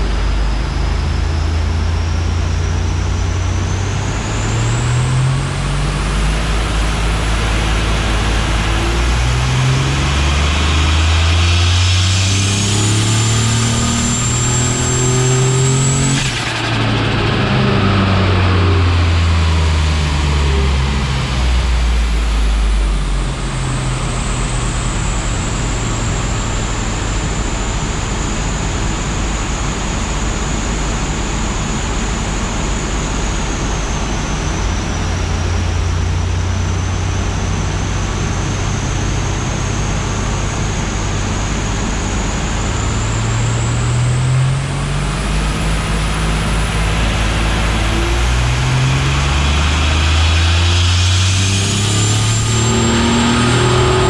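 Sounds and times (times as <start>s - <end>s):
car engine running: 0.0s - 54.0s
high-pitched whine: 0.0s - 54.0s.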